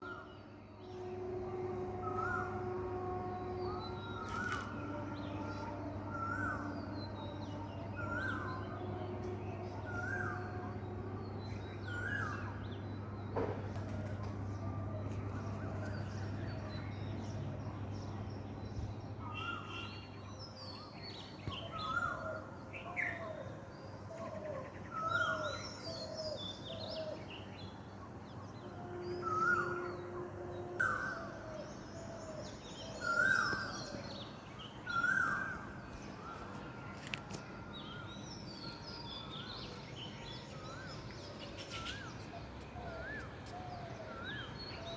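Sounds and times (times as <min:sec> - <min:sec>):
low hum: 0:00.0 - 0:19.3
birds chirping: 0:24.8 - 0:44.9.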